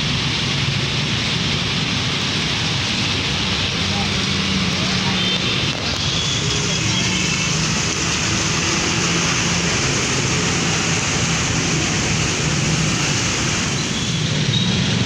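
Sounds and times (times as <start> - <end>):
tyres hissing on wet road: 0.0 - 15.0.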